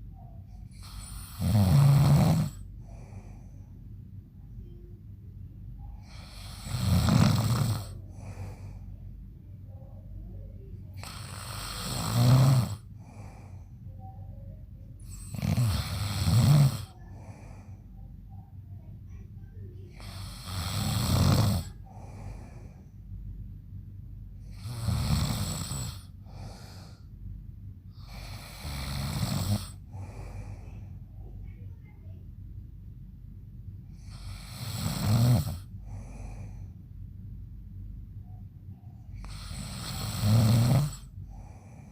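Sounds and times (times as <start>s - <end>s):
man snoring loudly: 0.8s - 2.6s, 6.1s - 8.3s, 11.0s - 12.9s, 15.1s - 17.0s, 20.0s - 21.8s, 24.5s - 26.6s, 28.0s - 30.2s, 34.1s - 36.2s, 39.2s - 41.1s
faint breath: 2.5s - 4.8s, 7.8s - 11.9s, 12.8s - 16.0s, 16.8s - 21.0s, 21.6s - 23.5s, 25.9s - 32.2s, 35.5s - 37.0s, 40.9s - 41.9s.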